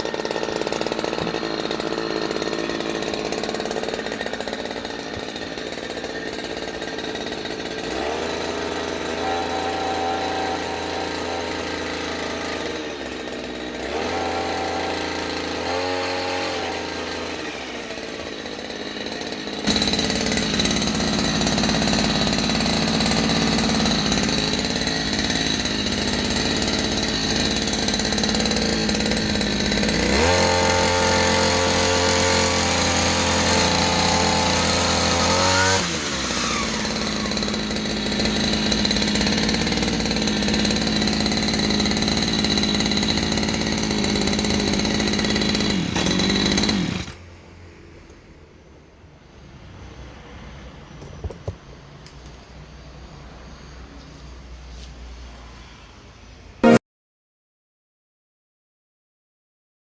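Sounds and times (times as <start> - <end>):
brush cutter engine revving: 0.0 - 47.3.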